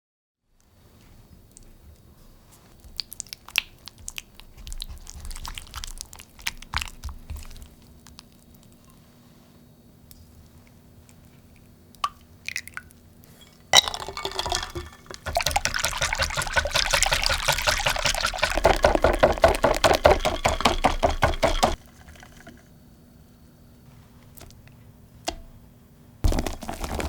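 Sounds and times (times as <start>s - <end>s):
whisk sloshing cream in a bowl: 3.8s - 8.0s, 15.2s - 22.6s
whisk clicking against bowl: 15.2s - 22.5s.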